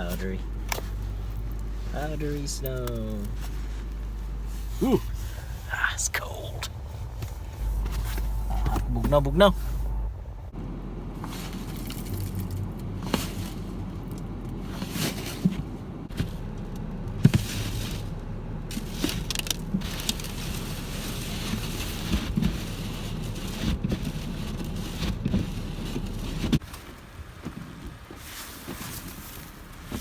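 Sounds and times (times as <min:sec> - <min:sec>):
brushing and scraping snow: 0:00.0 - 0:10.1, 0:19.9 - 0:26.9, 0:28.0 - 0:30.0.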